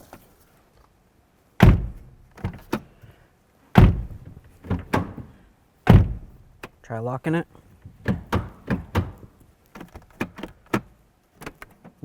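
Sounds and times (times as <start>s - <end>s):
car door latch thunks: 1.6s - 2.9s, 3.8s - 5.3s, 5.9s - 6.8s, 7.9s - 11.6s
door handle clicks: 8.1s - 9.3s.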